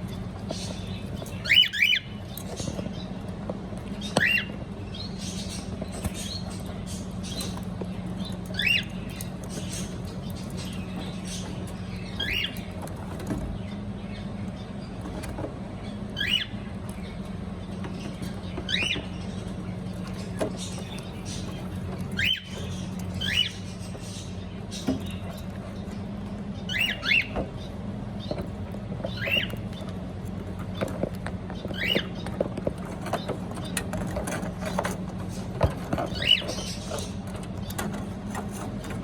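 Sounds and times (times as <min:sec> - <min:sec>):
steady low hum: 0:00.0 - 0:39.0
cockatiel chirping: 0:00.5 - 0:02.8, 0:04.0 - 0:07.6, 0:08.4 - 0:12.7, 0:20.6 - 0:24.3, 0:26.6 - 0:27.4, 0:29.1 - 0:29.6, 0:31.7 - 0:32.2, 0:36.0 - 0:37.2.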